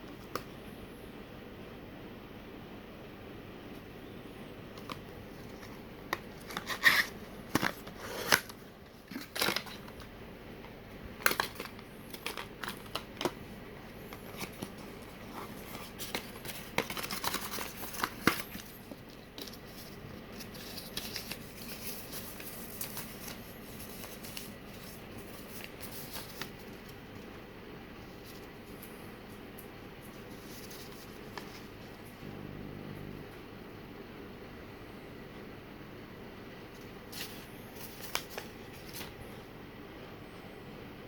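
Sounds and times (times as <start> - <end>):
packaging clicks and crinkling: 4.8 - 10.1, 11.2 - 27.3.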